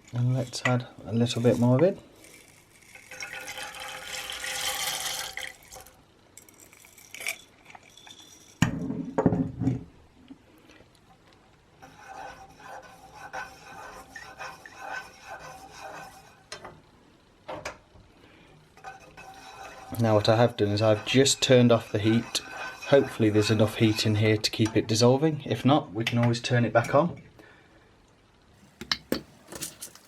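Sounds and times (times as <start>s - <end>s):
utensils clinking and scraping pan: 0.0s - 5.9s, 11.8s - 16.4s, 18.8s - 24.8s, 29.0s - 30.0s
wax pellets rattling into pan: 0.0s - 8.7s, 29.4s - 30.0s.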